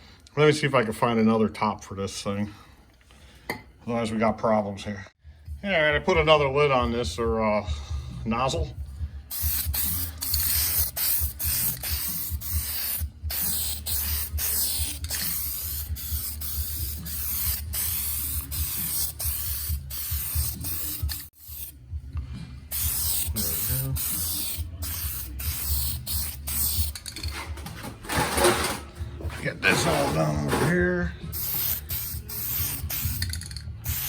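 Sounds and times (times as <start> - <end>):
aerosol can spraying hiss: 9.3 - 21.8, 22.7 - 27.0, 31.3 - 34.0.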